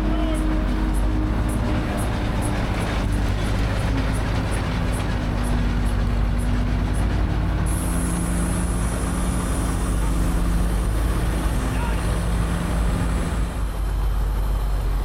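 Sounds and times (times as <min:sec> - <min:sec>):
steam shovel rumbling: 0:00.0 - 0:15.0.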